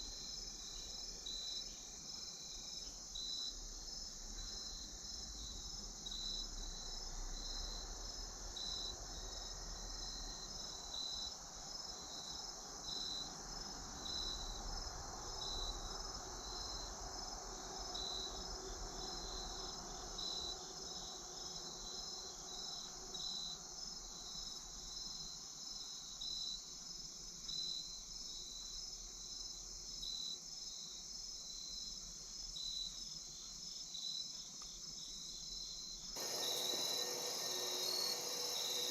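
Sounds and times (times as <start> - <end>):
pulsing cricket chirp: 0.0 - 38.9
insects shrilling: 36.2 - 38.9.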